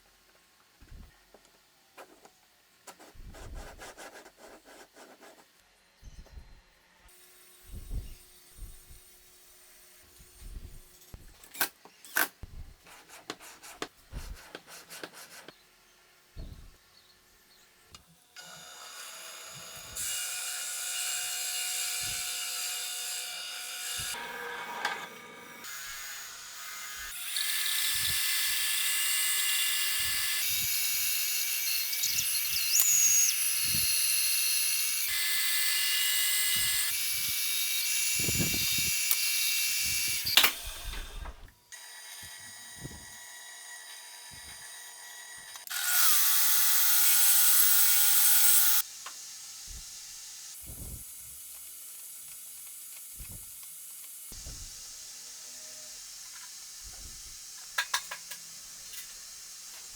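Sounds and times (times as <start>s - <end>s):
tool with pitched whine: 18.4s - 43.3s
power tool running: 18.4s - 51.2s.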